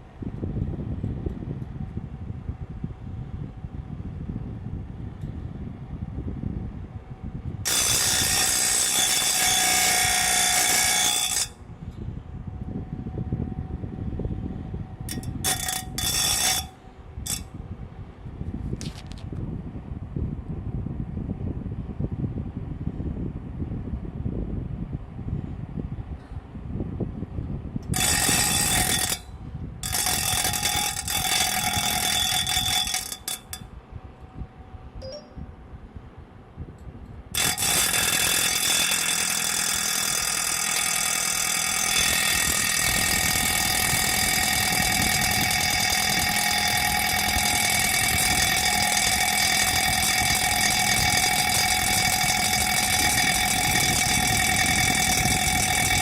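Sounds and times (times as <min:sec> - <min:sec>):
low hum: 0:00.0 - 0:24.2, 0:25.0 - 0:56.0
appliance mechanical whine: 0:37.3 - 0:56.0.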